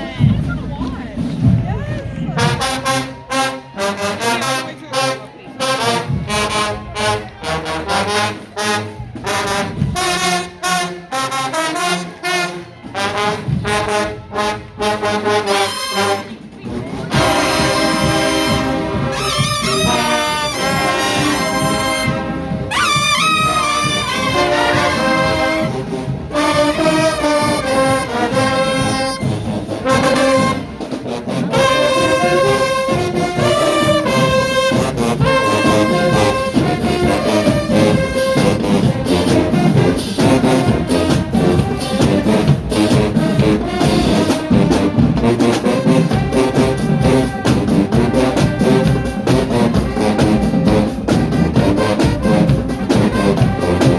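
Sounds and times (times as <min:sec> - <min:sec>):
marching drums: 0:00.0 - 0:53.9
brass section playing melody: 0:02.3 - 0:53.9.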